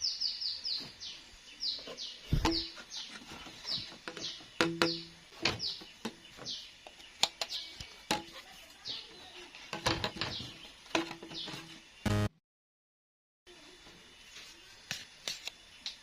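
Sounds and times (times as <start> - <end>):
knocks and taps: 4.0 - 5.0.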